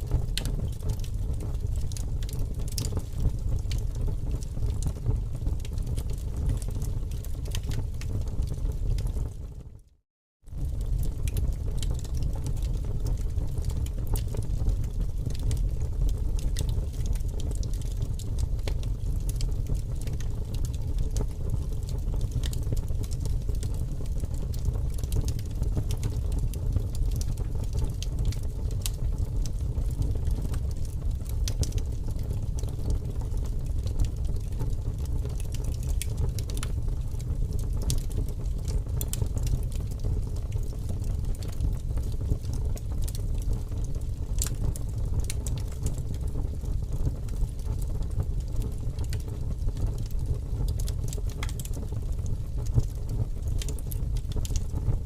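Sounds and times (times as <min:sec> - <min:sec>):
fire crackles and pops: 0:00.0 - 0:09.7, 0:10.5 - 0:55.0
low rumble of flames: 0:00.0 - 0:55.0.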